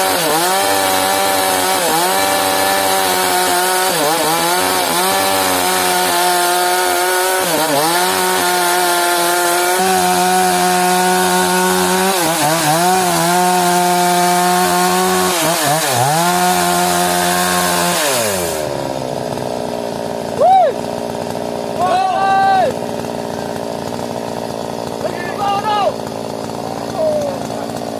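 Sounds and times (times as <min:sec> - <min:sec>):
chainsaw cutting wood: 0:00.0 - 0:27.9.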